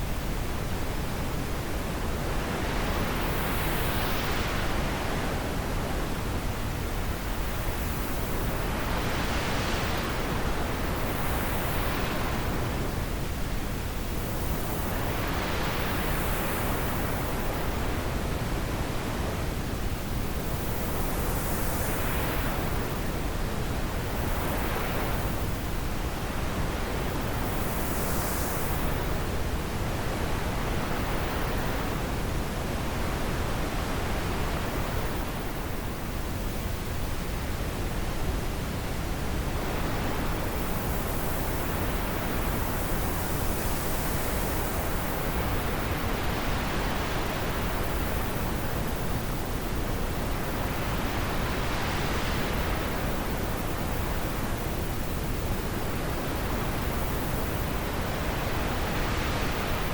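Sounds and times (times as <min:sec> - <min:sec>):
wind blowing in gusts: 0:00.0 - 0:59.9.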